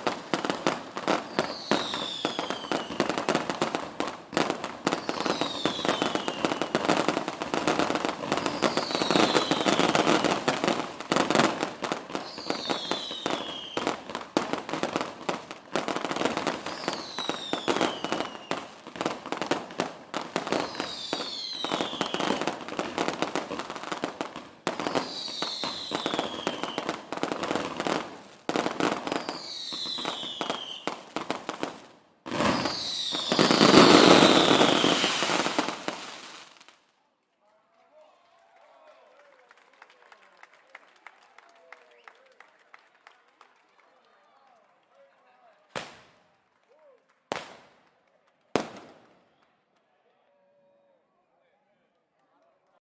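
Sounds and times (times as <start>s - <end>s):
fireworks crackling and popping: 0.0s - 37.0s, 45.7s - 46.5s, 47.2s - 49.9s
falling whistle of fireworks: 1.1s - 3.3s, 4.8s - 7.0s, 8.2s - 10.7s, 12.1s - 14.0s, 16.6s - 18.7s, 20.5s - 22.6s, 24.8s - 27.1s, 28.8s - 31.0s, 32.3s - 36.4s.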